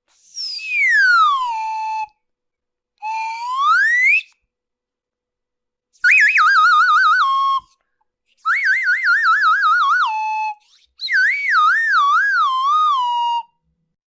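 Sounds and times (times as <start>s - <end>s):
cartoon whistle sliding down: 0.2s - 2.1s.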